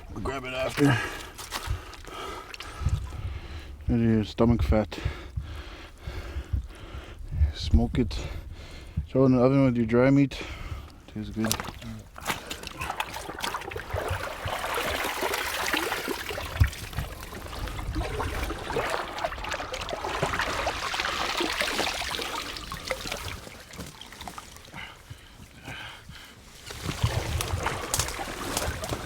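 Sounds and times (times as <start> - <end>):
liquid trickling and sloshing: 11.3 - 25.5, 26.1 - 29.0.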